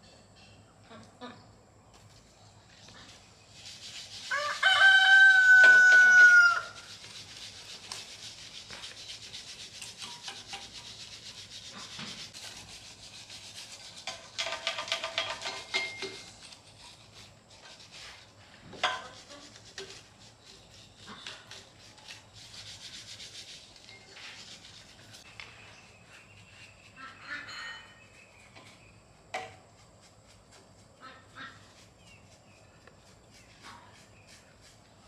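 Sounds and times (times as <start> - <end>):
rubbing strokes: 3.1 - 27.3, 29.7 - 35.0
rooster crowing: 4.3 - 6.8.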